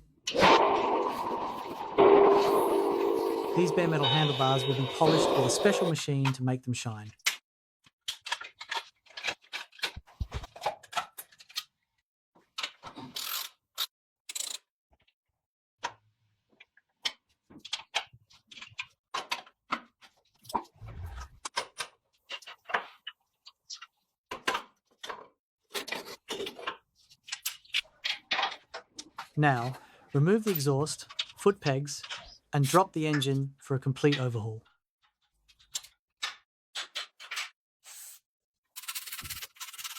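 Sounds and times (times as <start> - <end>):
dull low thumps: 20.8 - 21.4.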